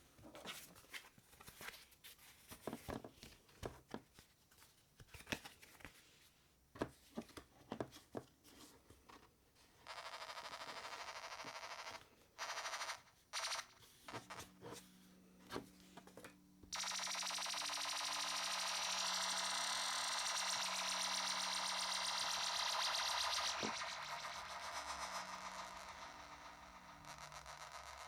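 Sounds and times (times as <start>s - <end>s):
noisy synth bursts: 16.7s - 27.7s
stepping synth tones: 16.7s - 28.0s
synth buzz over low drone: 16.8s - 28.0s.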